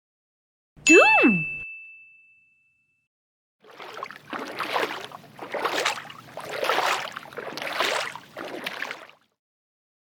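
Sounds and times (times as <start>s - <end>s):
rhythmic paddling splashes: 3.6s - 9.3s.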